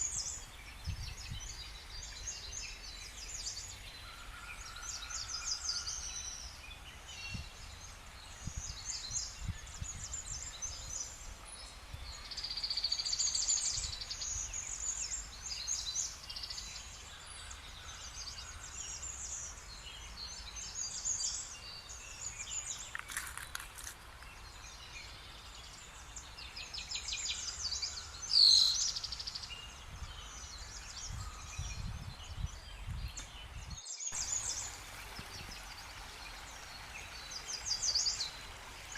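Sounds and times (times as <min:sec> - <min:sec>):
songbirds chirping and trilling: 0:00.0 - 0:38.9
wind rumble on microphone: 0:00.2 - 0:02.7, 0:06.7 - 0:12.6, 0:29.0 - 0:33.9.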